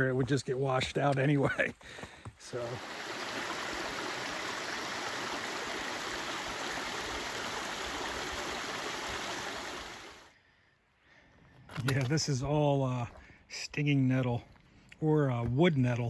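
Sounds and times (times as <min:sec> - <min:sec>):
stream water flowing: 0:02.5 - 0:10.3.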